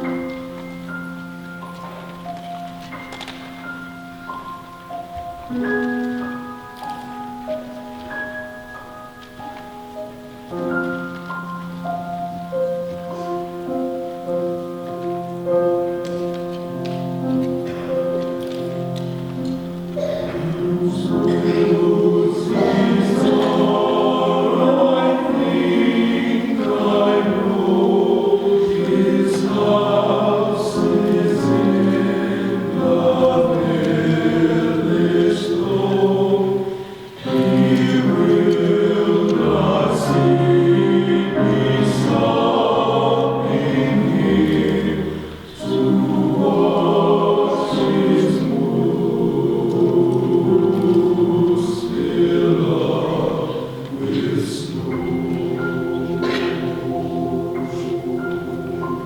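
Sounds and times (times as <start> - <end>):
men's chorus singing: 20.0 - 59.0.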